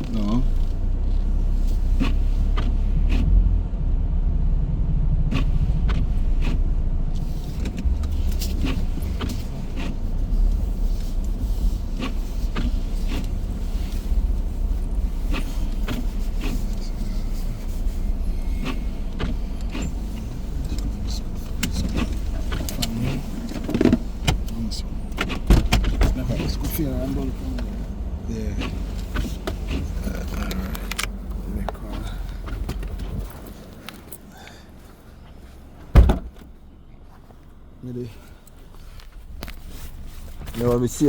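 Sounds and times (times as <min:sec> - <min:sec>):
car road and engine rumble: 0:00.0 - 0:41.0
sharp clicks and knocks: 0:18.6 - 0:26.8.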